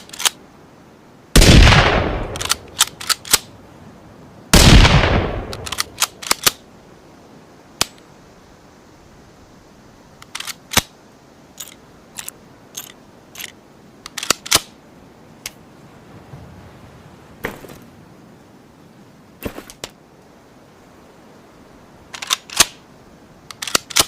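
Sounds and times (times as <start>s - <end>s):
rifle bolt clicks and snaps: 0.0s - 0.4s, 2.2s - 3.5s, 5.5s - 6.6s, 10.2s - 10.9s, 11.6s - 14.7s, 22.1s - 22.8s, 23.5s - 24.0s.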